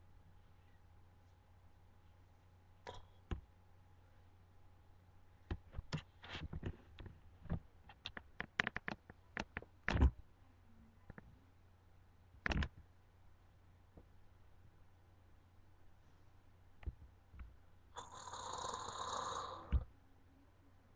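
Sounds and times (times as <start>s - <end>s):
faint steady hum: 0.0s - 20.9s
sharp clicks and knocks: 5.5s - 10.2s, 12.4s - 12.8s.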